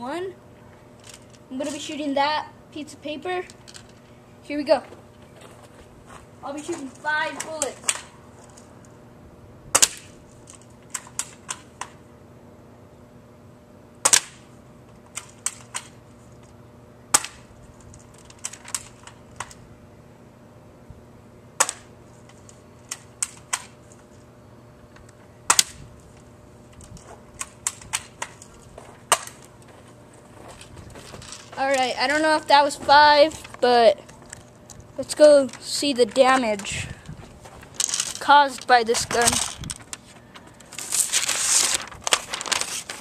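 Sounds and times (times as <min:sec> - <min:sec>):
airsoft rifle shots: 0:09.7 - 0:10.2, 0:14.0 - 0:14.5.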